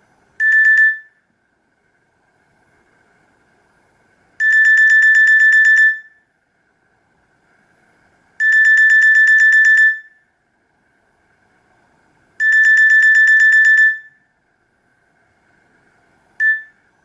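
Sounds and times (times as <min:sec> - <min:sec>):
trilled electronic ringtone: 0:00.4 - 0:01.2, 0:04.4 - 0:06.2, 0:08.4 - 0:10.2, 0:12.4 - 0:14.2, 0:16.4 - 0:16.8.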